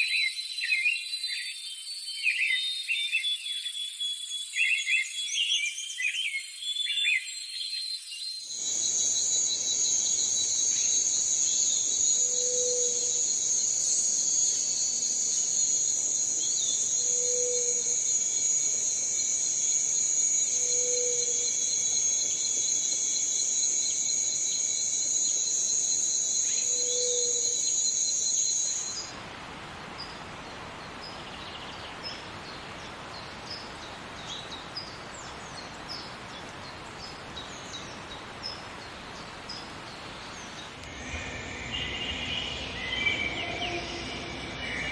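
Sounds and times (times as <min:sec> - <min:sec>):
insect chorus drone: 0:00.0 - 0:44.9
faint high chirps: 0:40.8 - 0:44.9.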